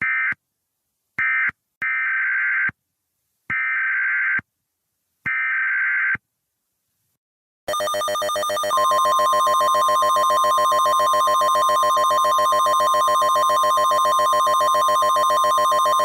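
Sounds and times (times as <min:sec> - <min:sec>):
steady high alert tone: 0:07.7 - 0:16.0.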